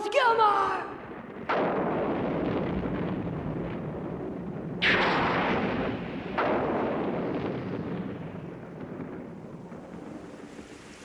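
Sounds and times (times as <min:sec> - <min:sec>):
thunder-like crashes: 0:00.9 - 0:11.0.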